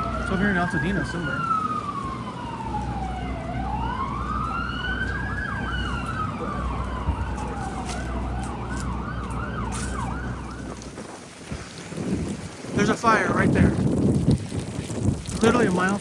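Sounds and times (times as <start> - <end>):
siren wailing: 0.0 - 11.0
siren yelping: 0.0 - 11.0
wind on microphone: 1.3 - 16.0.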